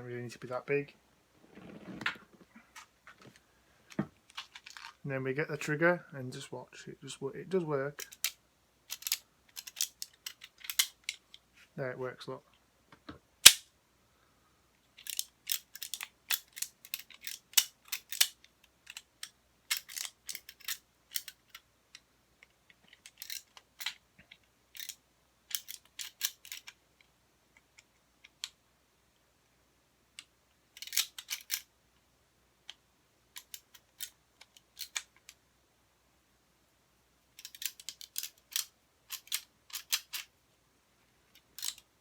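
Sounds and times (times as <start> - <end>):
loud sharp plastic snap: 13.4 - 13.7
light plastic clicks and rattles: 37.4 - 40.3.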